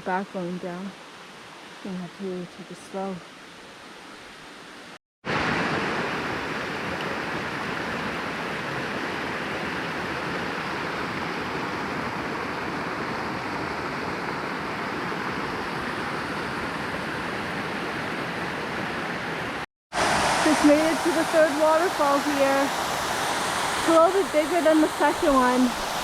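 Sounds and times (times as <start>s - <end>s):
waterfall roaring: 5.3s - 26.0s.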